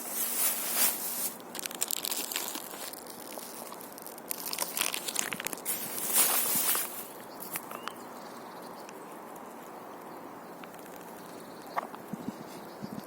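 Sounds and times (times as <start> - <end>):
plastic packaging crinkling: 0.0 - 7.8.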